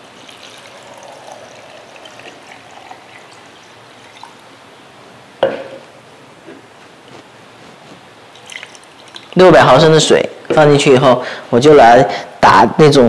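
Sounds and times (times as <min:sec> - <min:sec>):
water pouring into blender jar: 0:00.1 - 0:04.4.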